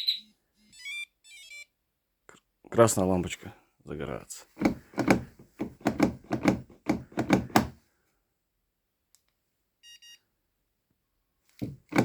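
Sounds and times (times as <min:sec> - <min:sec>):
short high electronic beeps: 0:00.0 - 0:01.7.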